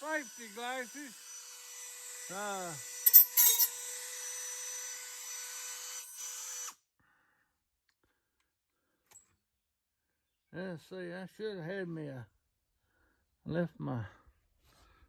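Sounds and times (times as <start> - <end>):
cutoff wheel cutting metal: 0.0 - 6.8.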